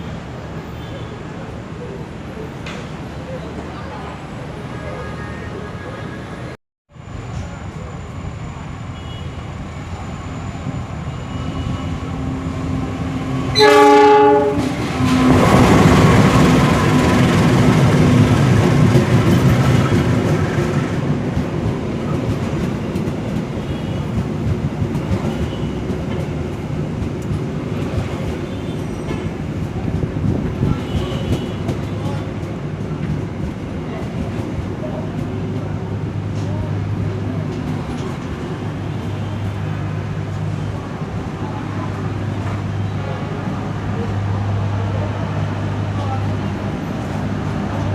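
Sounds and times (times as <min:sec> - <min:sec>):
train rumble and rail clatter: 0:00.0 - 0:47.9
train horn blast: 0:13.5 - 0:16.9.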